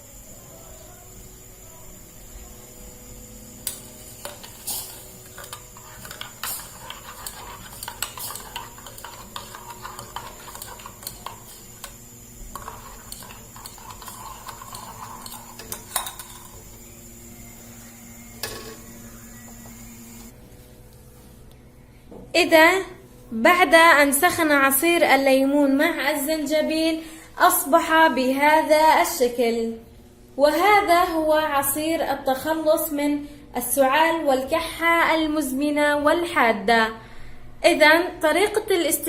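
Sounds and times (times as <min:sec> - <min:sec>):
metal spoon scraping a pot: 0:04.1 - 0:16.7.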